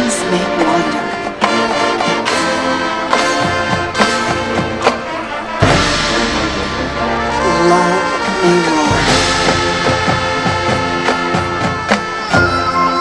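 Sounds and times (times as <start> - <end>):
brass chords: 0.0 - 13.0
drum and cymbal hits: 3.1 - 12.4.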